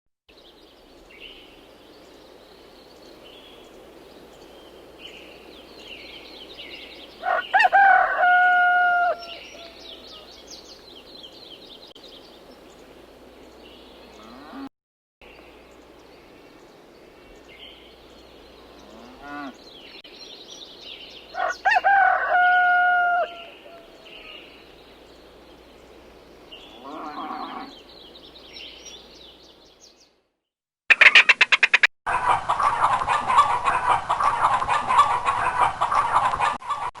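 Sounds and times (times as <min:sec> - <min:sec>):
small birds chirping: 0:00.3 - 0:08.0, 0:09.1 - 0:14.6, 0:15.2 - 0:22.2, 0:23.2 - 0:30.2
chicken calling: 0:07.2 - 0:10.3, 0:21.3 - 0:24.4, 0:30.9 - 0:36.9.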